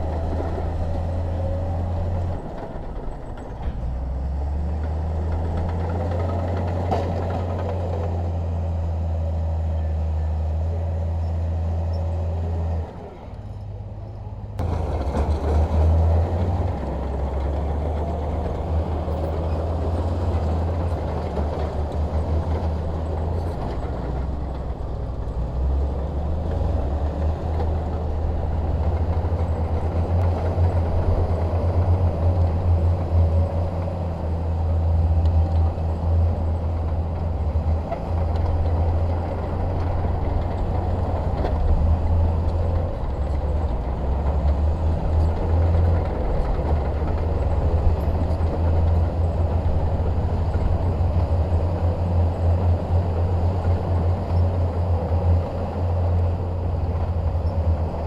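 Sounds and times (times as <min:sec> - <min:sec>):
bulldozer diesel engine working: 0:00.0 - 0:58.0.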